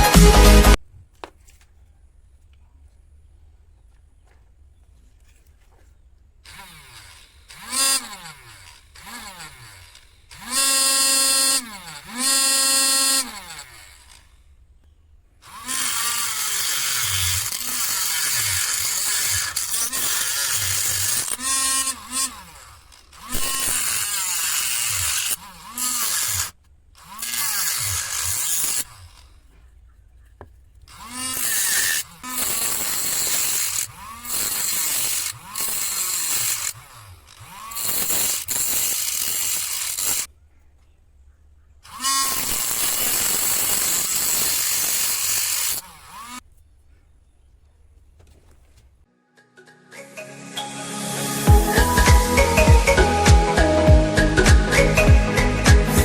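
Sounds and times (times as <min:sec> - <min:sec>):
harsh grinding: 0:06.4 - 0:14.5, 0:15.4 - 0:29.7, 0:30.8 - 0:40.3, 0:41.8 - 0:46.5
small motor whining: 0:06.4 - 0:14.8, 0:15.4 - 0:29.9, 0:30.8 - 0:40.3, 0:41.8 - 0:46.4.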